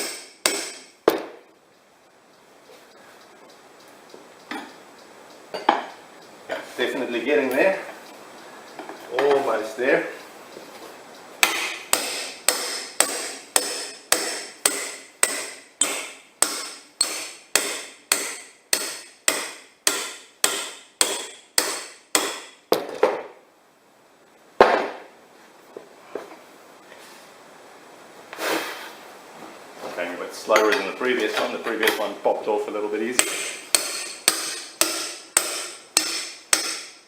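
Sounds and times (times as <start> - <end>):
hammer striking metal crowbar: 0.0 - 1.2, 11.4 - 22.6, 33.2 - 37.0.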